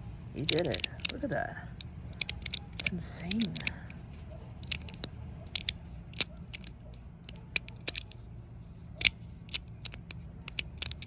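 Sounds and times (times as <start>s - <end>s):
low background rumble: 0.0s - 11.0s
fidget slider clicking: 0.4s - 1.2s, 1.8s - 3.8s, 4.6s - 8.2s, 9.0s - 11.0s.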